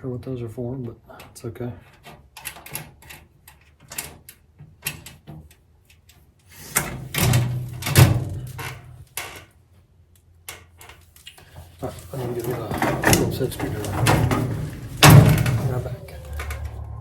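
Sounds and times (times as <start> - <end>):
sheet metal clicks and knocks: 1.9 - 6.2, 12.4 - 16.7
metal rattling scrape: 11.5 - 17.0.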